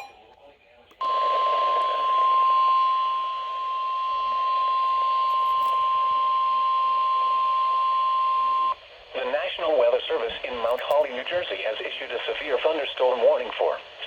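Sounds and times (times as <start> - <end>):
radio hiss: 0.2 - 14.0
steady warning alarm tone: 1.0 - 8.8.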